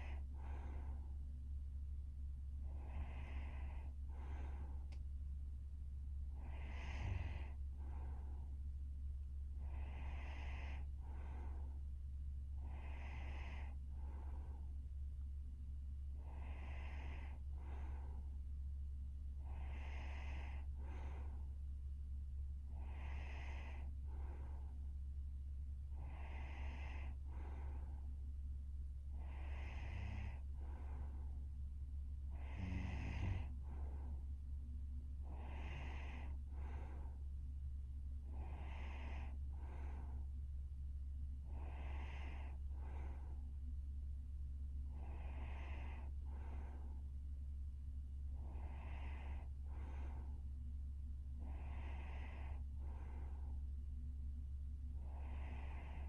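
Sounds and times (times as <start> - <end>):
low hum: 0.0 - 56.0
snort: 2.7 - 4.8, 6.4 - 8.3, 9.6 - 11.6, 12.6 - 14.5, 16.2 - 18.2, 19.4 - 21.4, 22.7 - 24.7, 26.0 - 27.9, 29.2 - 31.2, 32.3 - 34.0, 35.2 - 37.1, 38.3 - 40.2, 41.5 - 43.3, 44.9 - 47.0, 48.4 - 50.4, 51.4 - 53.5, 55.0 - 56.0
woman snoring: 2.7 - 4.9, 6.4 - 7.6, 9.6 - 11.6, 19.5 - 21.3, 22.8 - 24.6, 26.0 - 27.8, 29.2 - 31.1, 32.3 - 33.9, 35.2 - 36.8, 38.3 - 40.2, 41.5 - 43.2, 44.9 - 46.8, 48.4 - 50.3, 55.0 - 56.0.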